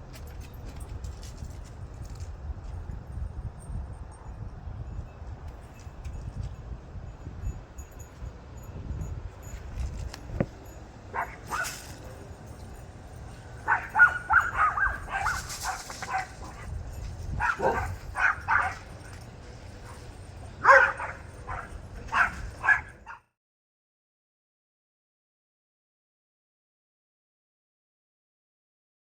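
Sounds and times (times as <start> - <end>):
dog barking: 11.1 - 11.8, 13.6 - 16.7, 17.4 - 19.1, 20.6 - 23.3.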